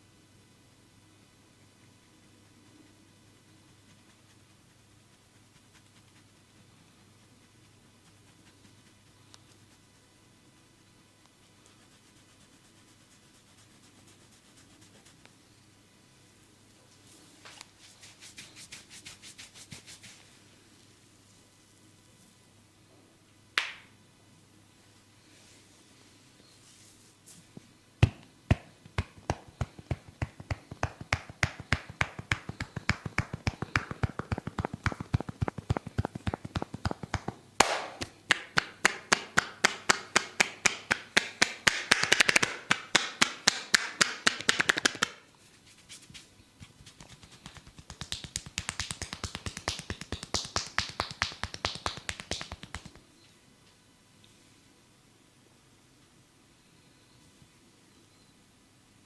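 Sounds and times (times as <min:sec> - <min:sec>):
hands clapping on head: 0:23.6 - 0:23.9, 0:28.0 - 0:45.2, 0:46.6 - 0:53.0.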